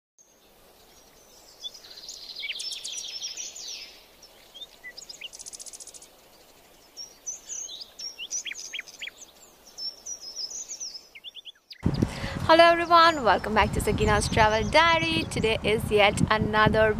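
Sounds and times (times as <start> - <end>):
songbirds chirping and whistling: 0.2 - 15.7
bird trill: 0.8 - 6.0, 6.8 - 12.0.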